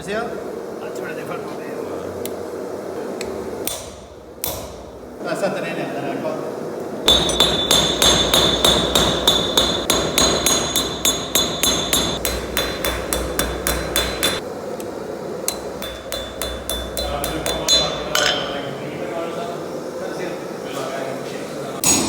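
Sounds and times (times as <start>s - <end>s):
hammer ringing on anvil: 7.1s - 14.4s, 15.5s - 18.6s.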